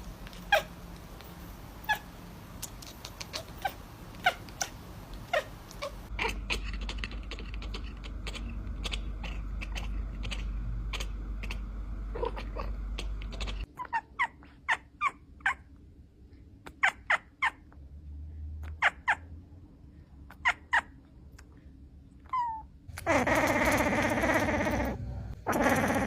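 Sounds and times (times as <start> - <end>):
steady low hum: 0.0 - 16.8, 17.6 - 26.0
kittens mewing: 2.7 - 15.7, 22.3 - 26.0.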